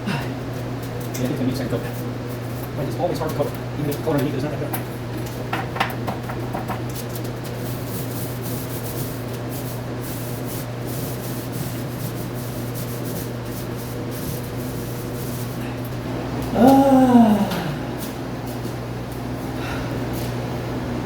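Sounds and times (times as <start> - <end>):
paint roller rubbing on wall: 6.5 - 15.8.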